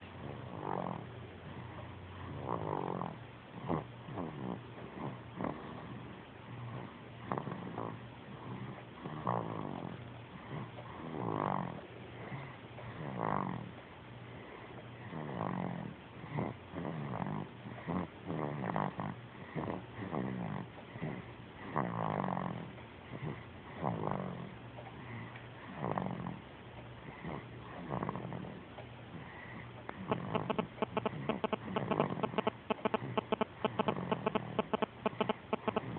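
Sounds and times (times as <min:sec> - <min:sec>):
snoring: 0:00.2 - 0:13.7, 0:14.5 - 0:26.4, 0:27.0 - 0:35.9
short snores: 0:02.3 - 0:06.0, 0:15.0 - 0:24.5, 0:25.1 - 0:26.4, 0:27.1 - 0:28.6.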